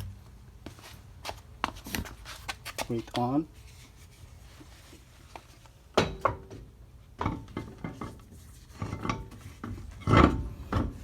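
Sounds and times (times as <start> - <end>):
metal clanks of wheel and lug nuts: 5.9 - 11.0.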